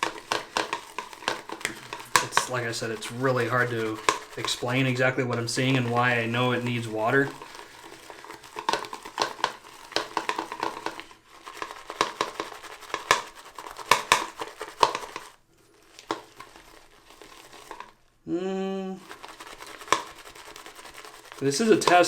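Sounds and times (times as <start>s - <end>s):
shaving brush lathering soap: 0.0s - 18.0s, 19.0s - 22.0s
person humming: 18.3s - 19.1s.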